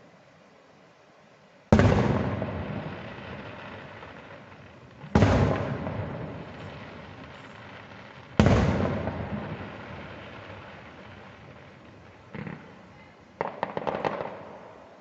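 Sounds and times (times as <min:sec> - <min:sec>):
firework shells booming: 0:01.7 - 0:14.9.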